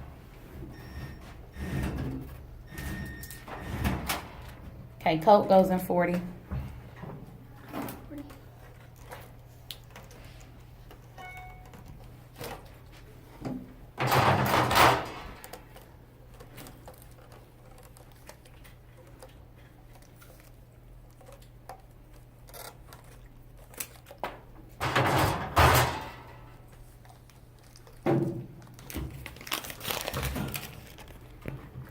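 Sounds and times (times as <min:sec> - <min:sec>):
bottles and cans clattering: 0:24.8 - 0:26.6.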